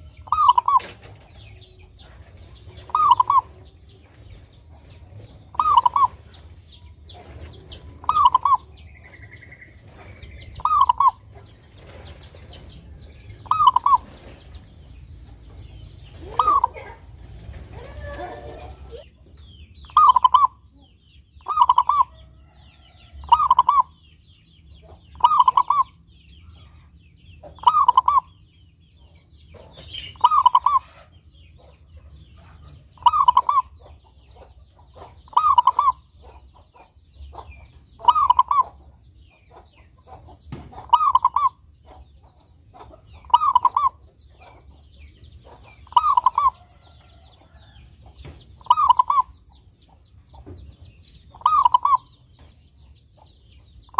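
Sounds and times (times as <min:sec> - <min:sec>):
dove cooing: 0:00.0 - 0:01.2, 0:02.0 - 0:03.7, 0:05.5 - 0:06.3, 0:07.1 - 0:08.7, 0:10.3 - 0:12.7, 0:13.4 - 0:14.4, 0:16.1 - 0:19.1, 0:19.9 - 0:20.6, 0:21.4 - 0:22.2, 0:23.2 - 0:23.9, 0:25.1 - 0:26.0, 0:27.6 - 0:28.3, 0:30.1 - 0:31.1, 0:32.4 - 0:34.6, 0:35.3 - 0:36.9, 0:38.0 - 0:38.8, 0:40.8 - 0:41.6, 0:43.2 - 0:44.7, 0:45.8 - 0:46.8, 0:48.6 - 0:49.4, 0:51.4 - 0:52.1.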